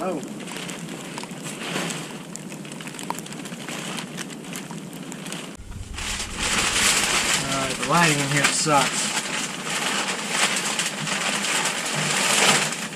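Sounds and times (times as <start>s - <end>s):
crunching footsteps in snow: 5.6s - 11.9s.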